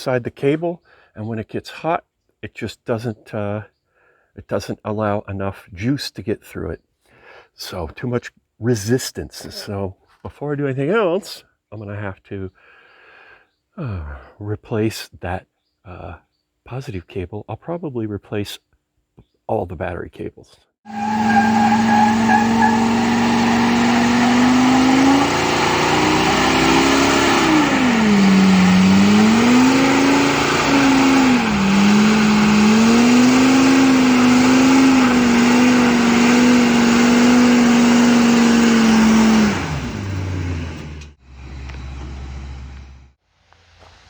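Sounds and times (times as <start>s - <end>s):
tires squealing: 20.9s - 42.8s
truck engine revving: 20.9s - 43.1s.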